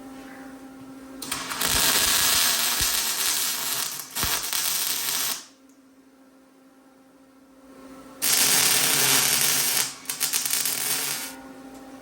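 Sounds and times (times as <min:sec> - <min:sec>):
welder crackling: 0:01.2 - 0:05.5, 0:08.2 - 0:11.4.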